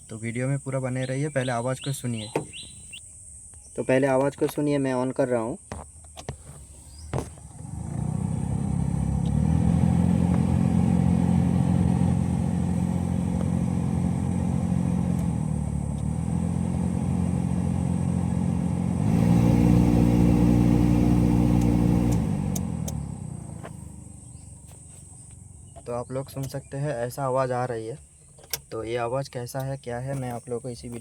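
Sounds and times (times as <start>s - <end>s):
blower fan motor whirring: 7.6s - 24.4s.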